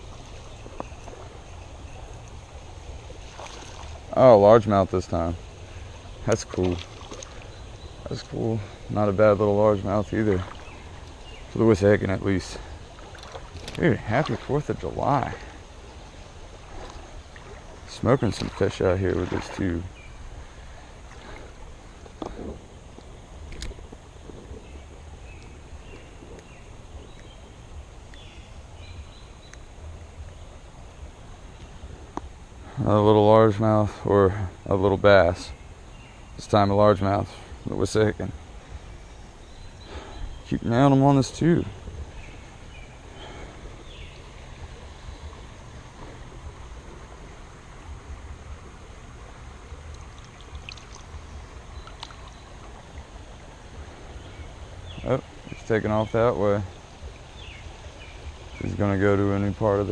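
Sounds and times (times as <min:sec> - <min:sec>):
creek water running: 0:00.0 - 0:59.9
faint high ticks: 0:29.4 - 0:30.4, 0:51.8 - 0:52.4
faint clicks: 0:51.8 - 0:52.4.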